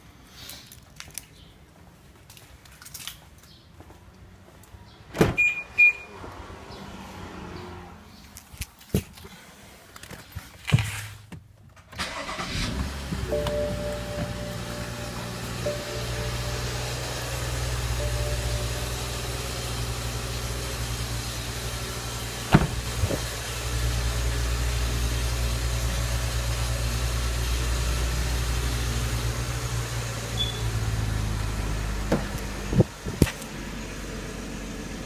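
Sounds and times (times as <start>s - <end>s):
car engine idling: 12.0s - 35.0s.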